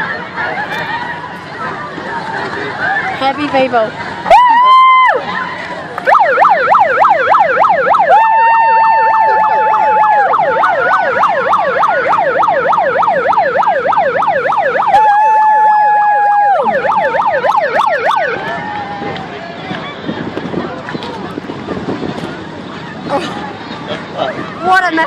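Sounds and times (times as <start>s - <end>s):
electronic siren yelping: 6.1s - 18.4s
steady high siren tone: 6.1s - 18.5s.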